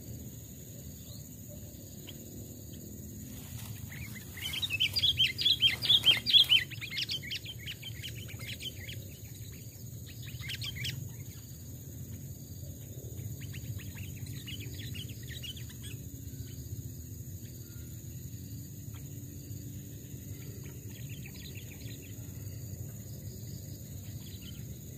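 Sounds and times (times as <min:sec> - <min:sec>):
bird chirping: 0:00.8 - 0:11.9.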